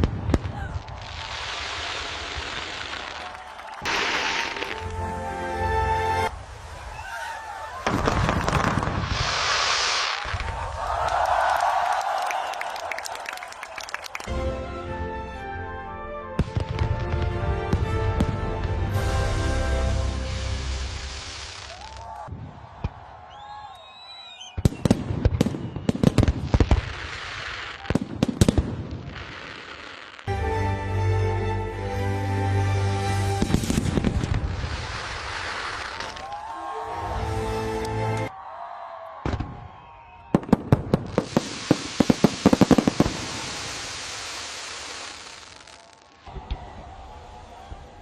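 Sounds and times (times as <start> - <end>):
fireworks banging: 0.0 - 5.2, 7.8 - 10.7, 24.5 - 30.3, 33.4 - 36.4, 40.3 - 46.7
fireworks crackling: 0.0 - 14.3, 16.4 - 23.1, 23.9 - 30.3, 33.1 - 36.6, 40.3 - 46.8
music: 4.4 - 6.3, 14.2 - 21.4, 30.3 - 33.7, 37.0 - 38.3.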